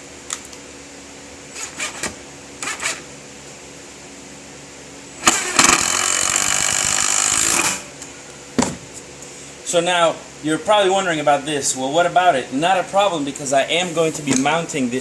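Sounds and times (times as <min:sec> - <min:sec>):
power drill running: 0:05.2 - 0:07.9.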